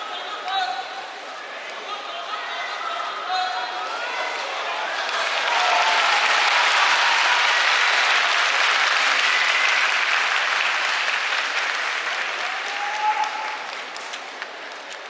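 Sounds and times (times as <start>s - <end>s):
crowd applauding and cheering: 4.5s - 15.0s.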